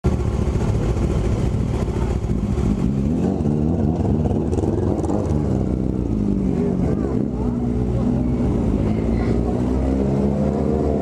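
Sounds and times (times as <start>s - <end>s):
motorcycle engine running loud: 0.1s - 11.0s.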